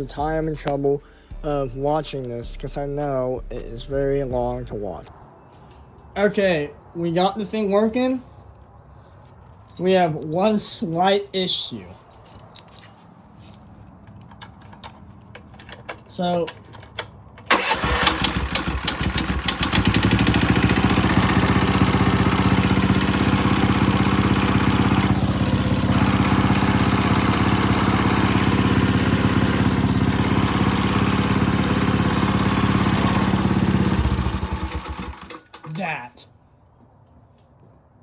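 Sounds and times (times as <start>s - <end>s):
electric starter cranking: 14.4s - 35.8s
small engine running: 17.5s - 35.7s.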